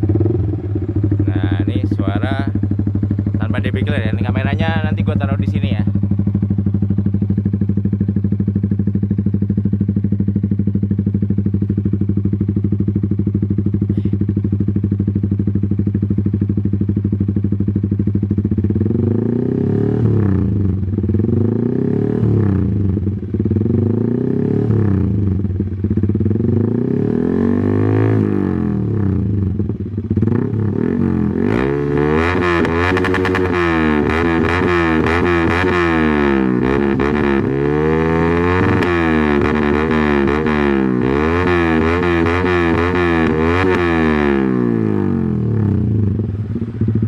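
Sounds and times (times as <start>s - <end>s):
loud motorcycle engine revving: 0.0s - 47.0s.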